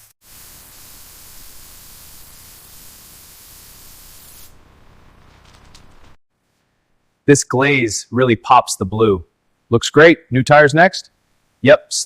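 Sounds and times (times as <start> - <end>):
paint spray gun hissing: 0.0 - 4.6.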